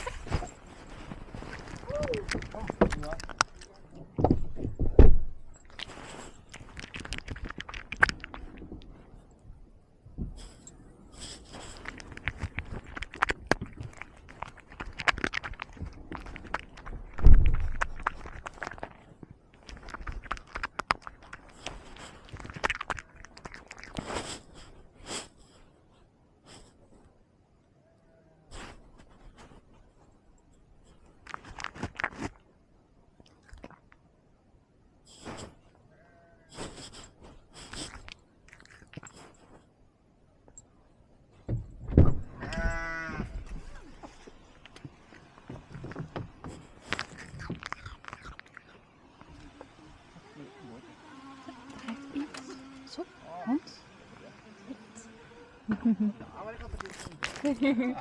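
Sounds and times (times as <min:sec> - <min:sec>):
light rustling: 0:00.0 - 0:09.5
crackling and rustling: 0:00.0 - 0:27.2, 0:28.5 - 0:34.1, 0:35.0 - 0:39.8, 0:40.4 - 0:53.2, 0:53.8 - 0:58.0
low thump on microphone: 0:04.2 - 0:05.4, 0:17.2 - 0:17.8, 0:41.5 - 0:42.5
heavy bump: 0:17.1 - 0:17.8
sheep bleating: 0:42.4 - 0:43.4.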